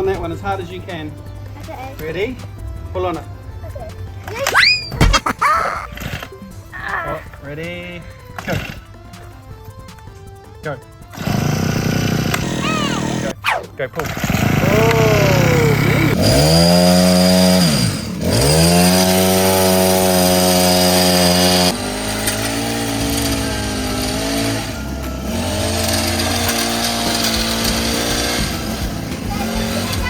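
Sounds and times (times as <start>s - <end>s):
toy chainsaw engine sound: 11.3s - 13.3s, 14.0s - 30.0s.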